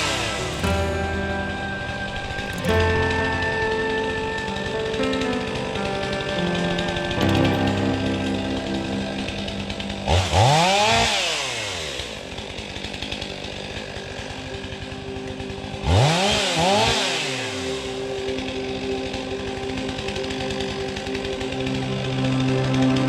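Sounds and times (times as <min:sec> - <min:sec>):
chainsaw revving: 0:05.6 - 0:23.0.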